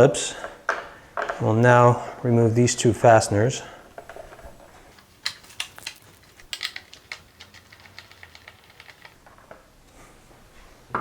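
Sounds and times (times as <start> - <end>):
screwdriver clicking and ticking: 5.0 - 9.2.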